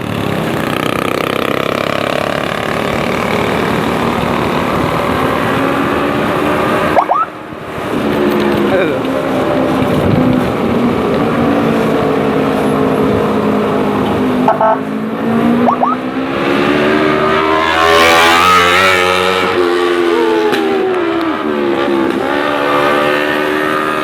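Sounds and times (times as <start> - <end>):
motorcycle engine accelerating: 0.0 - 24.0.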